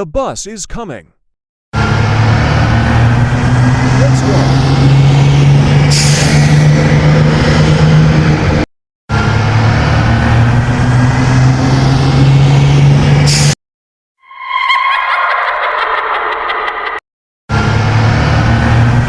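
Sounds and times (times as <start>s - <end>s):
bus engine droning: 1.8s - 13.4s.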